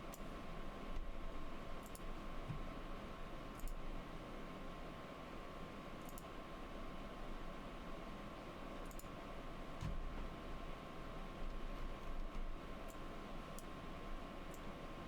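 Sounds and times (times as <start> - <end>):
low room hum with faint whine: 0.0 - 15.0
computer mouse clicking: 1.8 - 2.1, 3.6 - 3.8, 6.0 - 6.3, 8.8 - 9.2, 12.2 - 13.8.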